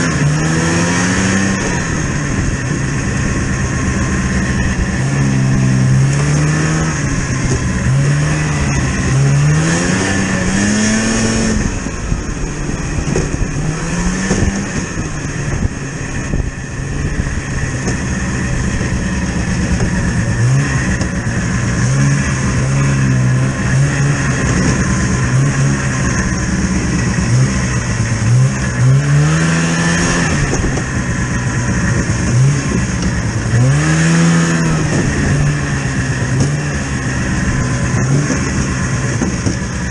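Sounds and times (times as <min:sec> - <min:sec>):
vehicle engine revving under load: 0:00.0 - 0:39.9.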